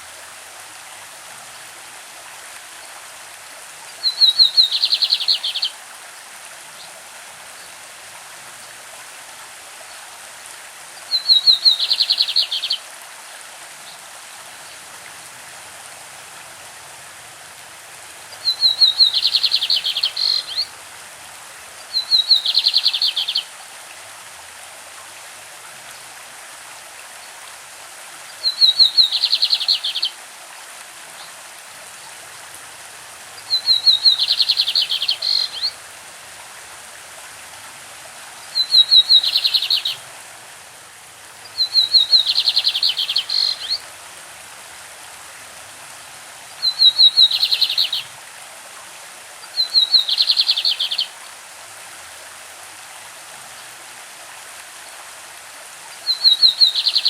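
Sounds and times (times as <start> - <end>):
stream running: 0.0 - 57.0
bird singing: 4.0 - 5.7, 11.1 - 12.8, 18.4 - 20.7, 21.9 - 23.5, 28.4 - 30.1, 33.5 - 35.7, 38.5 - 40.0, 41.5 - 43.8, 46.6 - 48.1, 49.6 - 51.1, 56.1 - 57.0.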